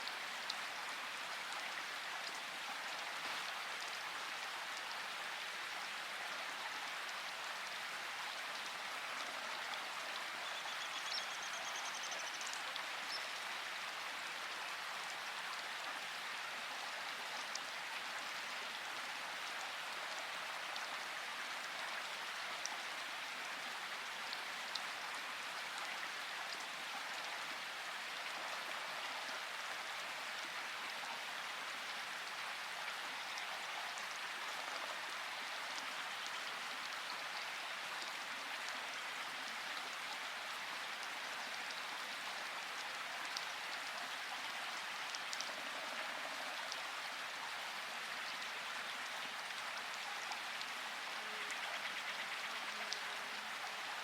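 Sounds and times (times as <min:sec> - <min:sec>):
rain falling: 0:00.0 - 0:10.5.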